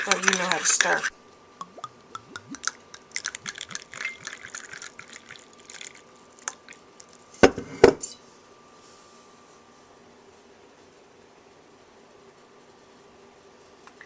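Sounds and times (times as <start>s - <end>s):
liquid swirling: 0.0s - 7.2s
spoon clinking against cup: 1.6s - 4.5s.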